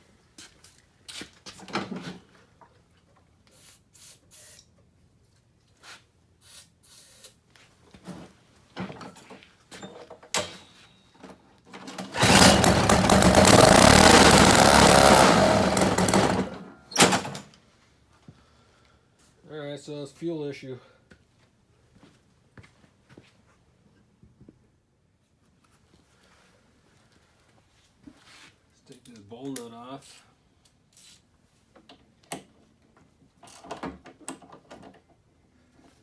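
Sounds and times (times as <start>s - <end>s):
scattered clicks and knocks: 11.8s - 17.4s
small two-stroke engine running: 12.0s - 16.7s.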